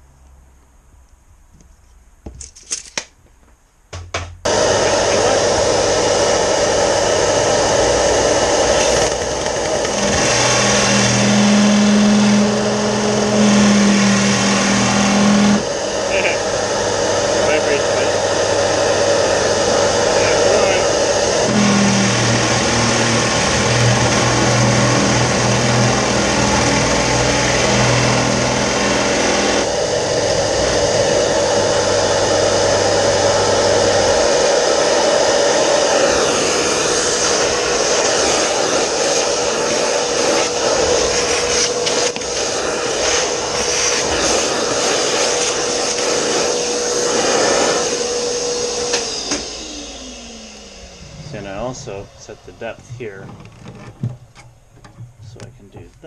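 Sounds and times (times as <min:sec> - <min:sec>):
electric drill whining: 0:04.4 - 0:55.2
low rumble: 0:49.9 - 0:53.6.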